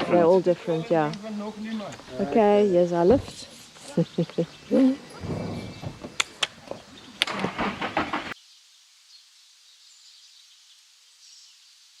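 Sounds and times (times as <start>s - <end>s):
faint hiss: 0.2s - 12.0s
car pulling up: 4.6s - 8.4s.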